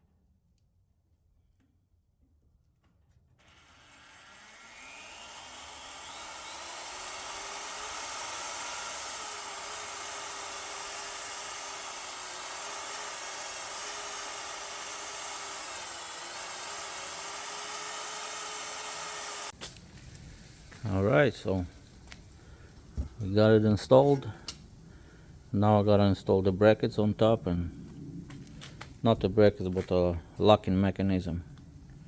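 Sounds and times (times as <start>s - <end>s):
power drill whining: 3.4s - 19.6s.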